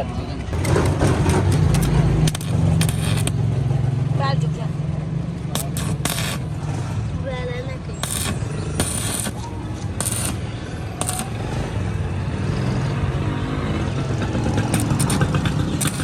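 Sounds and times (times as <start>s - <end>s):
quick clicks: 0.6s - 3.4s, 5.6s - 6.6s, 8.0s - 11.8s, 14.6s - 16.0s
metallic clanks: 0.6s - 3.6s, 5.6s - 6.8s, 8.0s - 11.8s, 14.4s - 16.0s.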